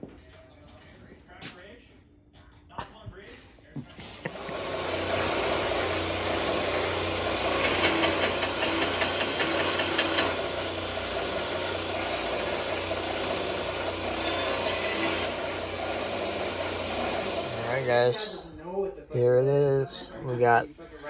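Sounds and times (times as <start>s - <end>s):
machine motor humming and hissing: 4.0s - 18.4s.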